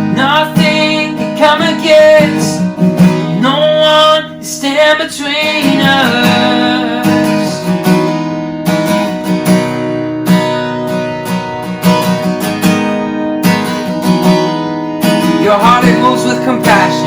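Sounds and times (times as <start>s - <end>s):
strummed acoustic guitar: 0.0s - 17.0s.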